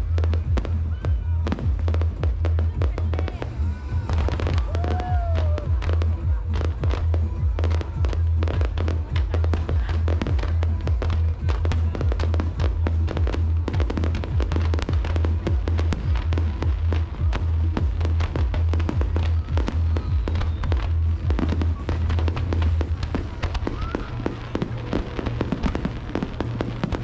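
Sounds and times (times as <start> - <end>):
fireworks crackling and banging: 0.0 - 27.0
music playing: 0.0 - 27.0.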